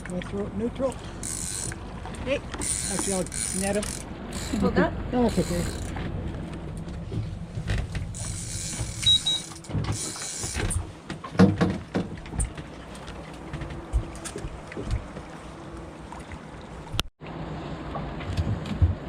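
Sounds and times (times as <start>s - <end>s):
boat engine idling: 0.0s - 17.0s
knocks and rattles: 5.4s - 12.7s.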